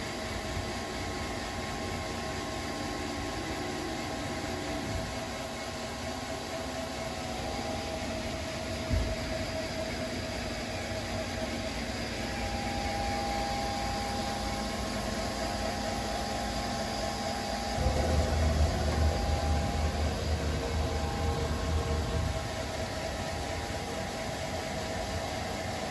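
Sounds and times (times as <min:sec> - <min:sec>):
lathe humming and whining: 0:00.0 - 0:25.9
uneven low rumble: 0:17.8 - 0:24.4.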